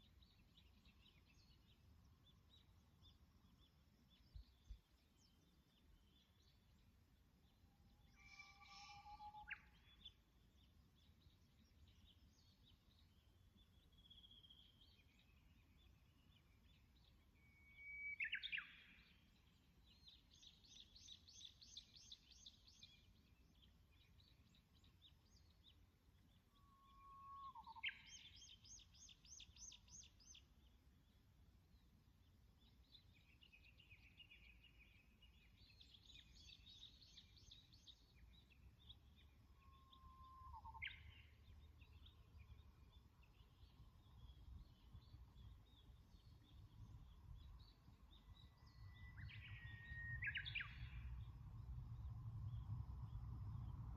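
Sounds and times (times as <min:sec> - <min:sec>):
songbirds singing: 0:00.0 - 0:53.9
low bird whistle: 0:08.1 - 0:09.9, 0:17.4 - 0:19.0, 0:39.6 - 0:41.3
high-pitched bird trills: 0:08.2 - 0:09.6
faint low rumble: 0:41.4 - 0:53.9.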